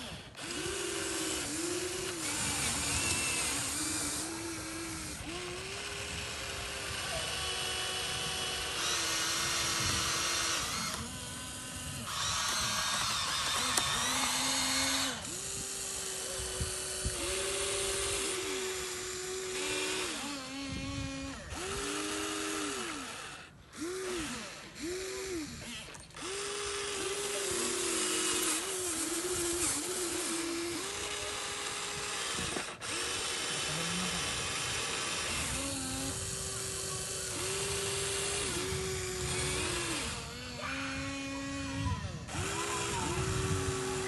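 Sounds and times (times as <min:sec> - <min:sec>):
electric motors whining: 0:00.0 - 0:44.0.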